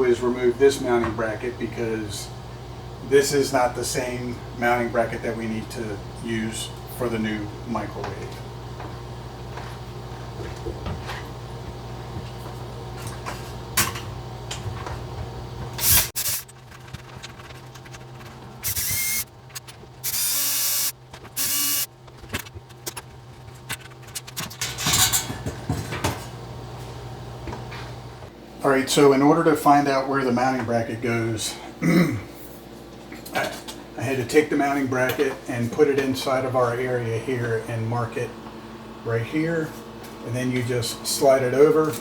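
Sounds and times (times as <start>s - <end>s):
power drill running: 15.8s - 21.9s.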